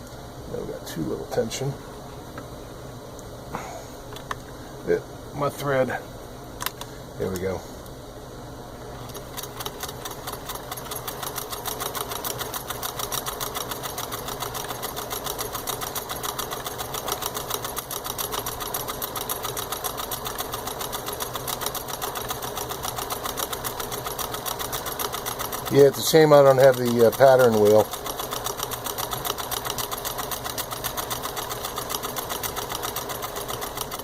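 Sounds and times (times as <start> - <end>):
needle mechanism clicking: 9.0 - 25.8
sewing machine running: 9.0 - 34.0.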